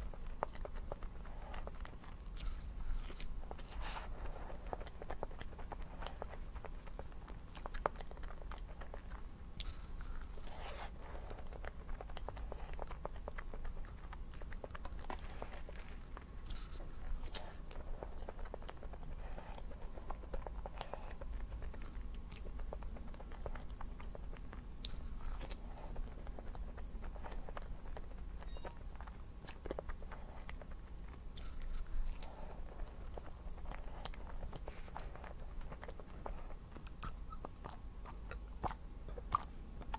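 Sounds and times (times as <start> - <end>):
person chewing food: 0.0 - 39.9
steady low hum: 0.0 - 39.9.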